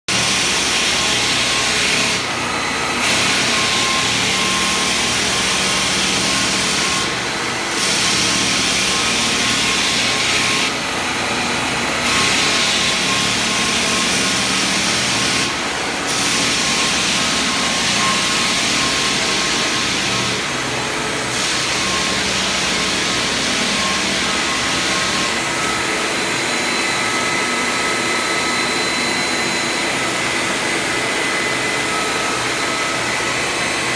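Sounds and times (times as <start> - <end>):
floor drum sander running: 0.1 - 33.9.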